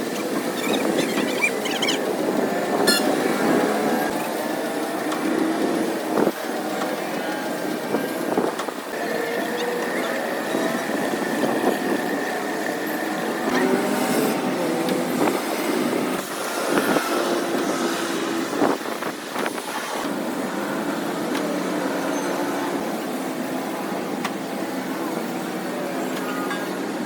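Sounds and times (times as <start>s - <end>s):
engine humming: 0.0s - 19.5s.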